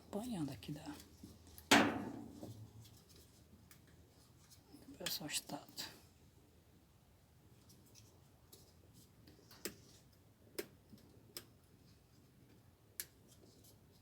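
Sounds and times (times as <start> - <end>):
small plastic clicks and taps: 10.5 - 11.6.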